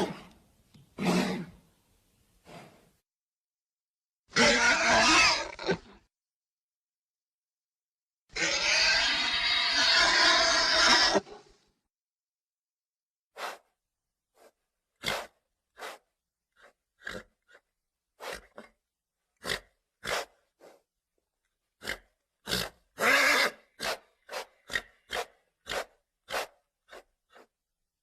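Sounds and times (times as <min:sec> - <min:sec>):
horse snorting and grunting: 0:01.0 - 0:01.5, 0:15.0 - 0:16.0, 0:16.6 - 0:17.6, 0:19.4 - 0:20.4, 0:21.8 - 0:27.5.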